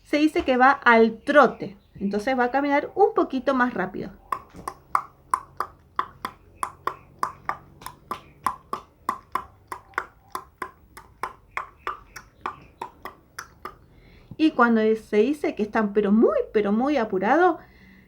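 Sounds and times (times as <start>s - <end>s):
tongue clicks imitating hooves: 4.2s - 14.4s.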